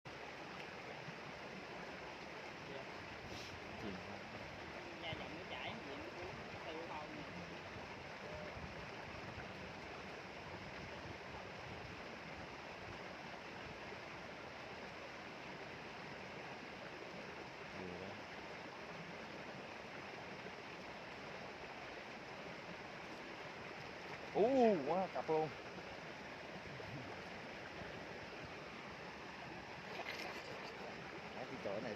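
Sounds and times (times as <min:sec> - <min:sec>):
flowing water rushing: 0:00.1 - 0:31.9
faint voice-like sound: 0:02.6 - 0:07.6, 0:08.2 - 0:08.7.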